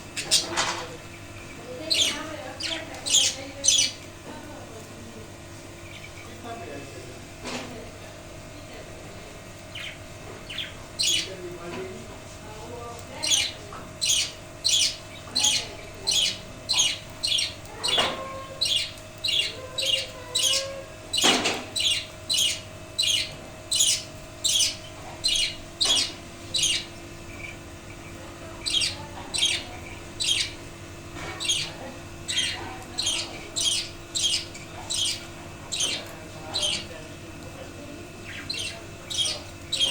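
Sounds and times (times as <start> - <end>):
budgie squawking: 13.2 - 27.6, 28.6 - 30.6, 32.3 - 36.0.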